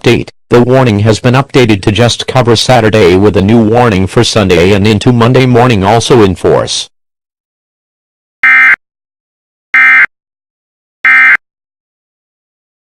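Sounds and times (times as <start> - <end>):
two-tone digital data bursts: 8.4 - 8.8, 9.8 - 10.1, 11.1 - 11.4.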